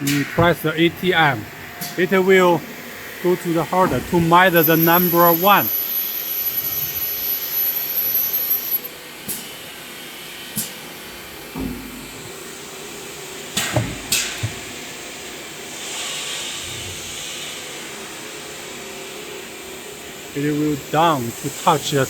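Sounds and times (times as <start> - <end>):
steady machine hiss: 0.0 - 22.0
high thin machine whine: 0.1 - 9.2.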